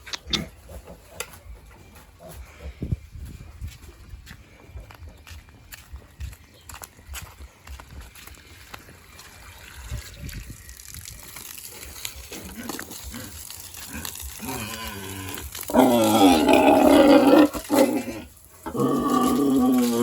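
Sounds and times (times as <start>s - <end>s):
pigs calling: 11.5s - 20.0s.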